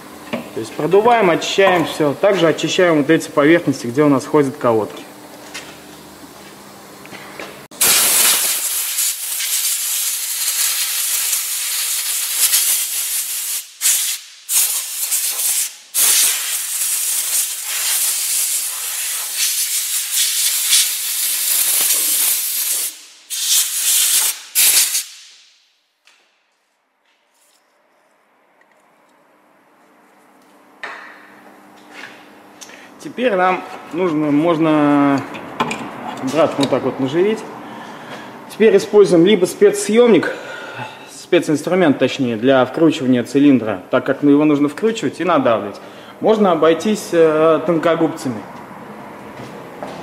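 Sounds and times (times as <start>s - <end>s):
compressed air gun hissing: 7.8s - 25.4s.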